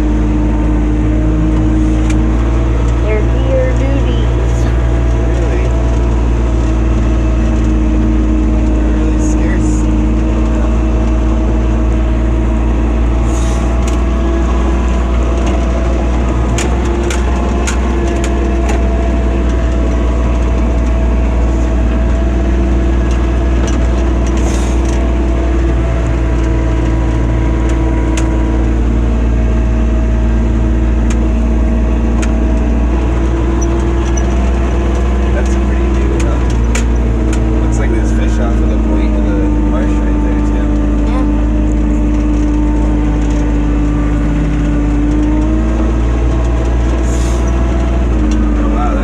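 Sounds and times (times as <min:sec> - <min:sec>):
atv engine running: 0:00.0 - 0:49.0
low rumble: 0:00.0 - 0:49.0
sharp clicks and knocks: 0:13.7 - 0:28.8, 0:32.0 - 0:37.7.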